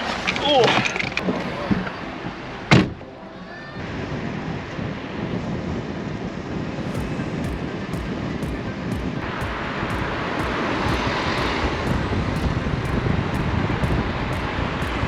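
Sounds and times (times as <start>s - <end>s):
sharp thump: 7.0s - 15.0s.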